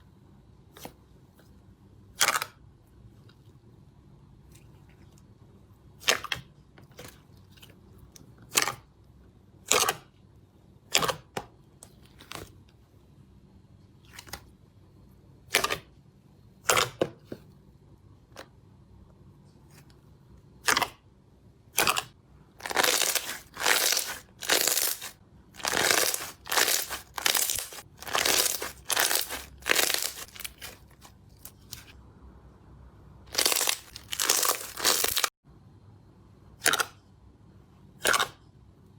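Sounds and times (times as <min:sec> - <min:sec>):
slime popping and crackling: 0:22.6 - 0:31.1, 0:33.3 - 0:35.3.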